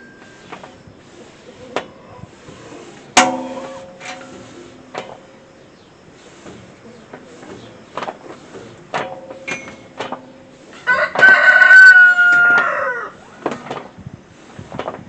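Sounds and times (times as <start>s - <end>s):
rooster crowing: 10.8s - 13.2s.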